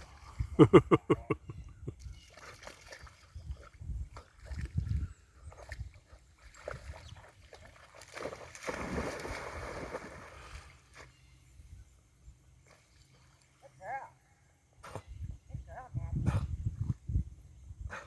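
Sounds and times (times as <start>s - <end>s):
water sloshing with low thumps: 0.0s - 13.6s
dog swimming in water: 2.0s - 11.1s
splashing: 2.2s - 11.1s.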